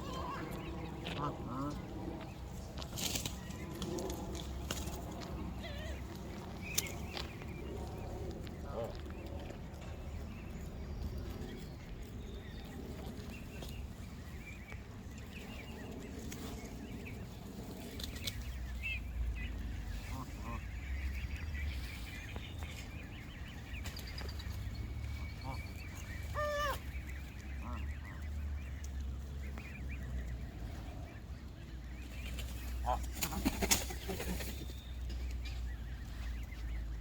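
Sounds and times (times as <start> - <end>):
geese honking: 0.0 - 2.4, 19.7 - 22.2, 25.0 - 30.4
steady low rumble: 0.0 - 37.0.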